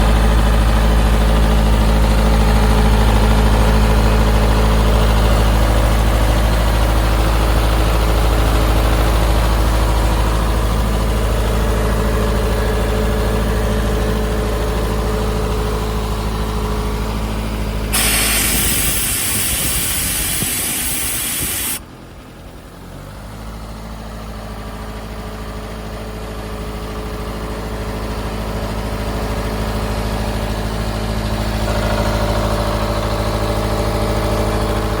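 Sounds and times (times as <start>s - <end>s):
air compressor running: 17.6s - 21.8s
air venting hiss: 18.0s - 21.8s.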